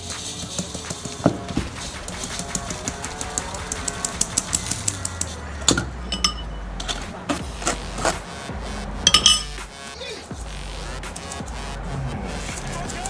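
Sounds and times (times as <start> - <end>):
sieve shaken and tapped over bowl: 0.0 - 8.2.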